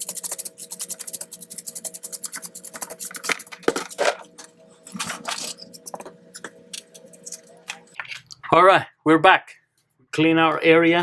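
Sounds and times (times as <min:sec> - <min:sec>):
bristle brush scrubbing: 0:00.0 - 0:04.0.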